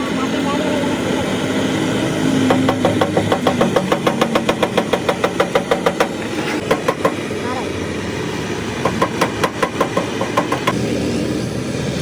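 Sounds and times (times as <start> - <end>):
engine hum: 0.0 - 12.0
rapid sharp knocks: 2.4 - 7.2, 8.8 - 10.8.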